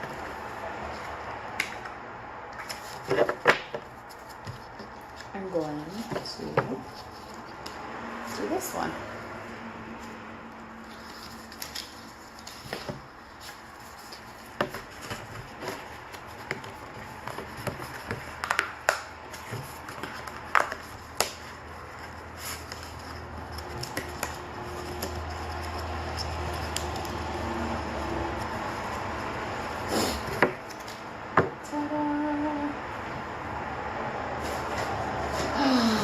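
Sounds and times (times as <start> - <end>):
packaging rustling: 10.8 - 27.2.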